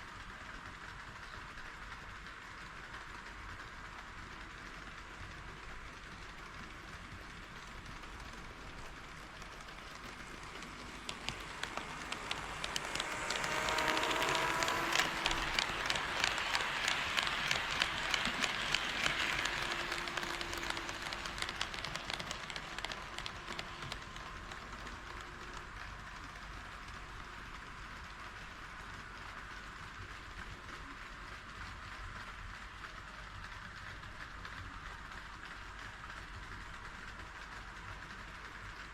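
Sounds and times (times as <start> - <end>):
model train running: 0.0 - 38.9
wheels clicking over rail joints: 6.0 - 27.3.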